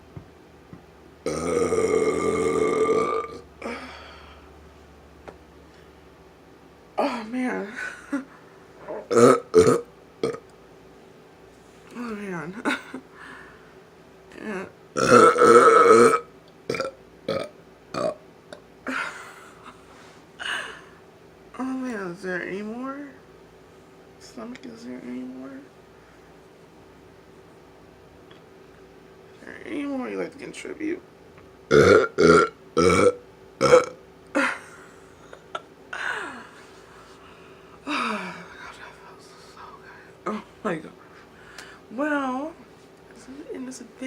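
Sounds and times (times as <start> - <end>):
person burping: 1.2 - 4.0, 8.9 - 10.4, 15.0 - 18.2, 31.7 - 34.6
breath: 3.7 - 4.5, 13.2 - 13.8, 36.0 - 38.3, 41.2 - 41.9.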